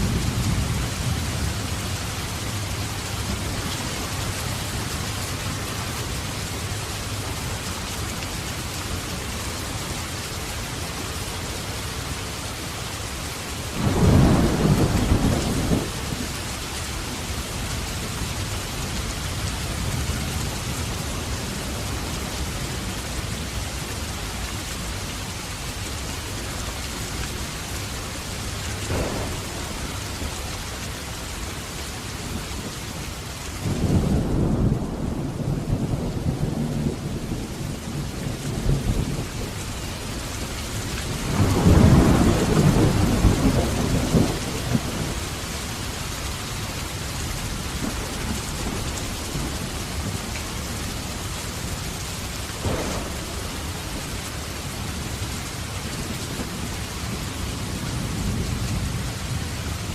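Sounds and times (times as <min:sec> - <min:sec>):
heavy rain: 0:00.0 - 0:59.9
thunder rumbling: 0:13.8 - 0:16.6, 0:28.7 - 0:31.0, 0:33.6 - 0:45.4, 0:52.5 - 0:59.9.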